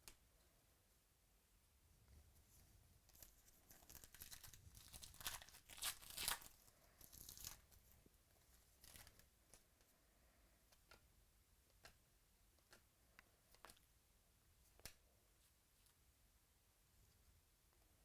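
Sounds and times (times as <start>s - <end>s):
wrapper tearing and crinkling: 3.2s - 7.7s.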